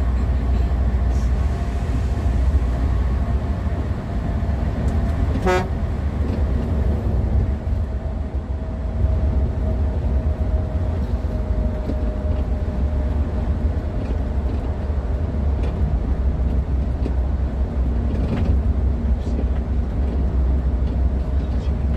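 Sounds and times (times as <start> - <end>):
vehicle engine and road rumble: 0.0 - 21.9
short horn honk: 5.4 - 5.7.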